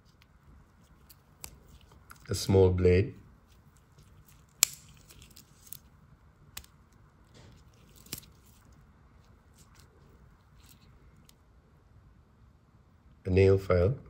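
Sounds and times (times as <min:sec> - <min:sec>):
pocket knife tools snapping: 0:04.5 - 0:05.8.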